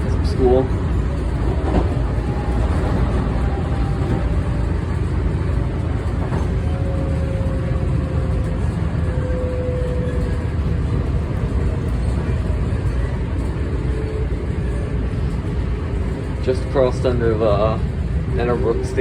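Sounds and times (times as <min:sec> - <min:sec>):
train rumbling along track: 0:00.0 - 0:19.0.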